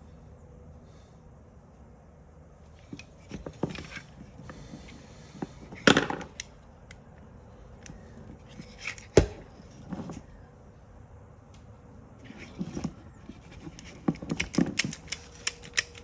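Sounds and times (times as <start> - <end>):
parts clattering: 2.8 - 7.0, 7.7 - 10.3, 12.2 - 16.0
seatbelt retractor parts clicking: 12.5 - 16.0.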